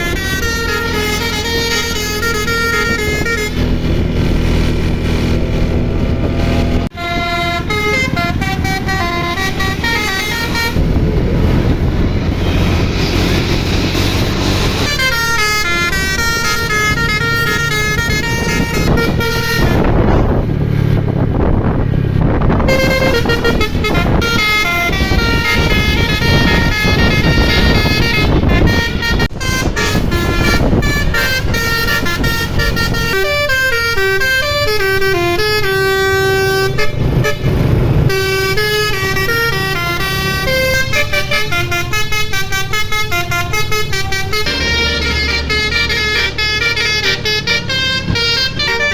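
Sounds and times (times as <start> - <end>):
musical bus horn melody: 0.0 - 21.7, 22.4 - 48.9
engine running: 0.0 - 48.9.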